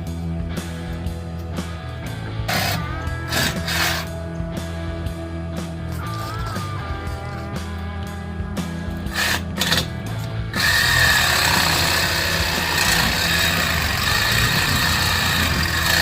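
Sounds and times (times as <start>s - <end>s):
background music: 0.0s - 16.0s
power tool motor whine: 10.5s - 16.0s.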